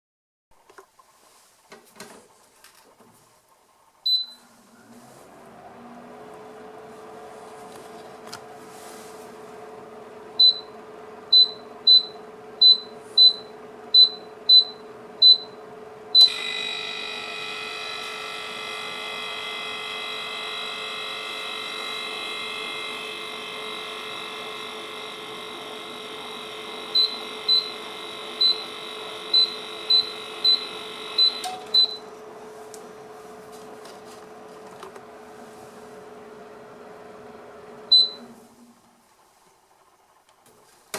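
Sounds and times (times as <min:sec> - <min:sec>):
dehumidifier humming: 0:04.1 - 0:40.9.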